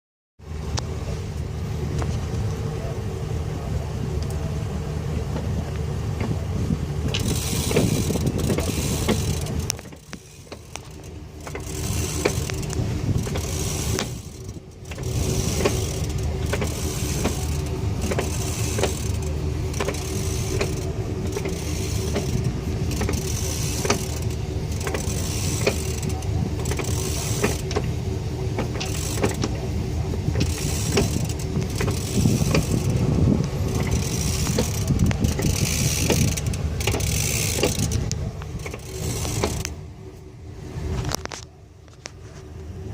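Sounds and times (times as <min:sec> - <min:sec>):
driveline hum: 0:00.4 - 0:42.9
driveline clicks: 0:07.1 - 0:28.0, 0:30.3 - 0:39.8.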